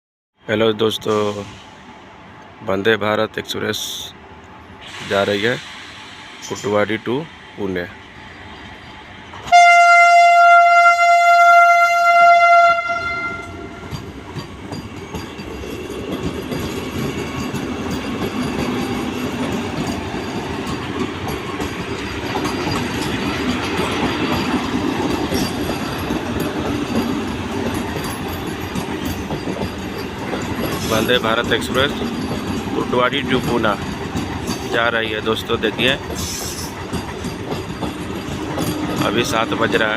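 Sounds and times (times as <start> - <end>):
train rumbling on rails: 0.4 - 39.9
train horn blast: 9.4 - 13.9.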